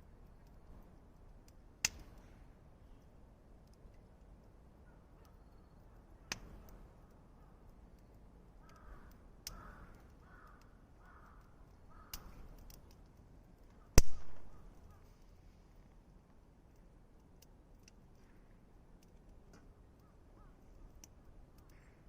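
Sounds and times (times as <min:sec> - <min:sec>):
campfire popping and crackling: 0:00.0 - 0:04.5, 0:05.3 - 0:22.0
crow cawing: 0:08.6 - 0:12.4, 0:20.0 - 0:20.6.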